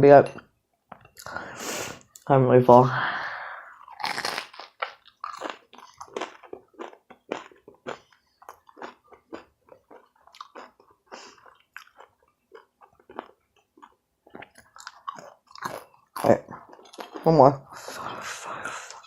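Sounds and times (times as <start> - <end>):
crunchy chewing: 3.8 - 18.2.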